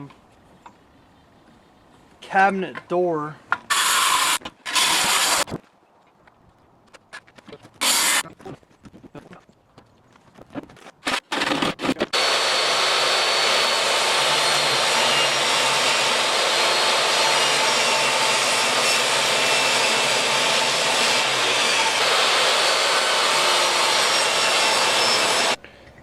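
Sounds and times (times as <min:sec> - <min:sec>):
power tool working wood: 0:03.7 - 0:05.4, 0:07.8 - 0:08.2, 0:11.1 - 0:25.6.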